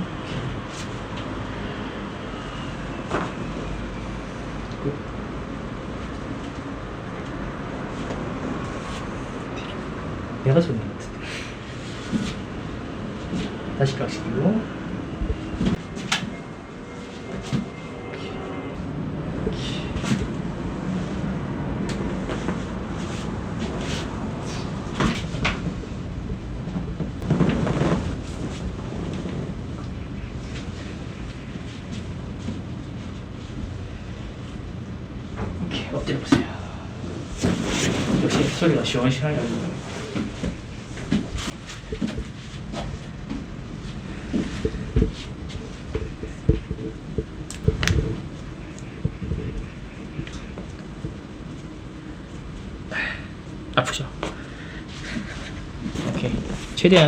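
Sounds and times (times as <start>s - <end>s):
steady low hum: 0.0s - 57.0s
spinal joints cracking: 44.3s - 51.2s
soft knocks thumps and clicks: 45.9s - 48.2s.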